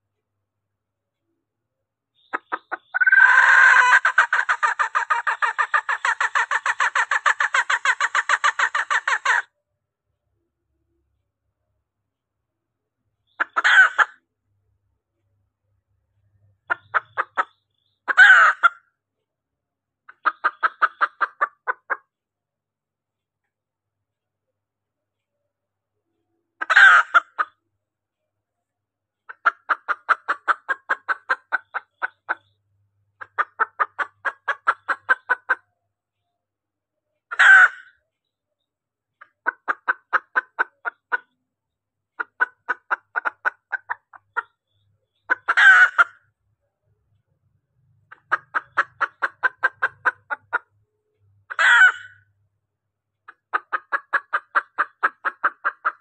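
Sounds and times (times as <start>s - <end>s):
harsh bird call: 2.2s - 9.5s
rapid hen clucks: 2.2s - 9.5s, 13.2s - 14.2s, 16.4s - 18.9s, 20.1s - 22.1s, 26.6s - 27.6s, 29.2s - 32.6s, 33.2s - 35.8s, 37.3s - 38.0s, 39.2s - 41.4s, 42.2s - 46.4s, 48.0s - 50.8s, 51.4s - 52.3s, 53.3s - 56.0s.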